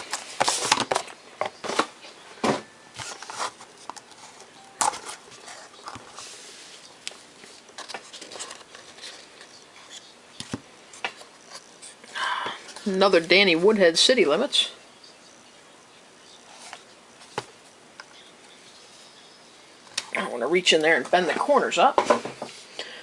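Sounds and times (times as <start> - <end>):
card packaging rustling and crinkling: 0.0 - 2.2, 2.9 - 11.7.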